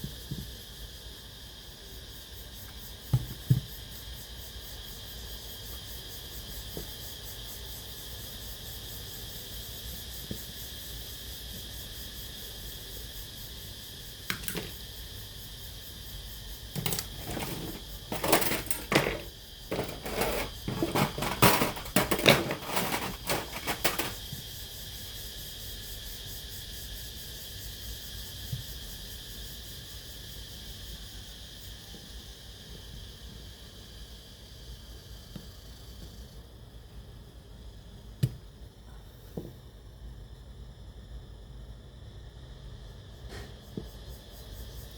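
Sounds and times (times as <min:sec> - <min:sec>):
plastic parts clicking and clattering: 0:14.3 - 0:14.7, 0:16.8 - 0:24.2.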